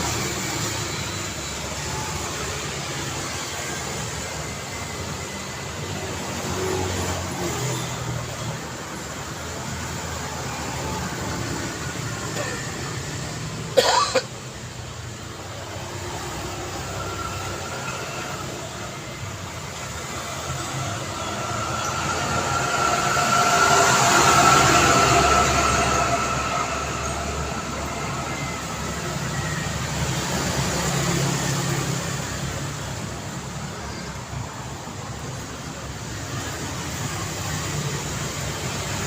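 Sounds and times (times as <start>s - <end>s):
street traffic: 0.0s - 39.0s
steady whine: 14.8s - 33.3s.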